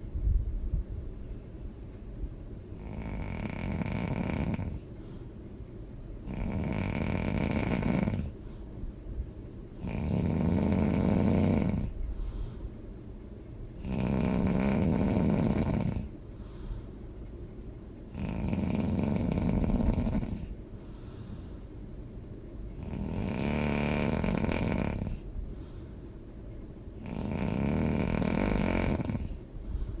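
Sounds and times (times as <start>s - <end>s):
quiet breaths: 1.1s - 30.0s
person snoring loudly: 2.8s - 4.8s, 6.2s - 8.3s, 9.8s - 11.9s, 13.8s - 16.1s, 18.1s - 20.5s, 22.8s - 25.2s, 27.0s - 29.4s.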